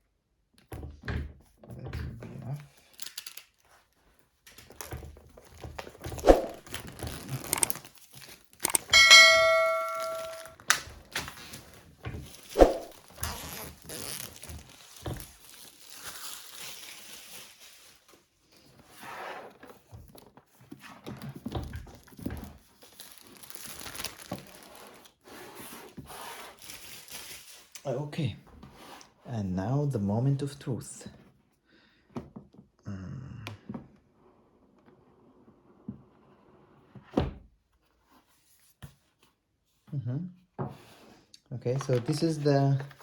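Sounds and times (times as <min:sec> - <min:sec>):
packaging crinkling: 0:06.6 - 0:08.7, 0:12.3 - 0:18.0, 0:22.8 - 0:25.0
short bright ringing tone: 0:08.7 - 0:10.5
cardboard box tearing: 0:13.2 - 0:17.4.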